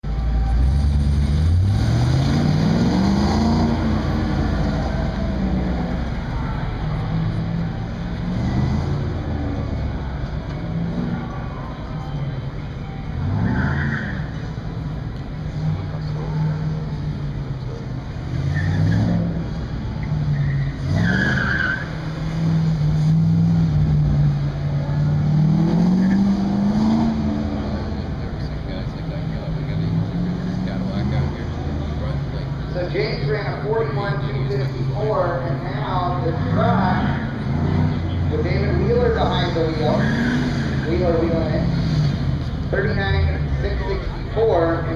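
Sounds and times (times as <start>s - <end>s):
pickup engine accelerating: 0.0s - 44.9s
tire squeal: 10.7s - 14.8s, 15.5s - 17.2s, 18.1s - 28.0s, 35.6s - 44.9s.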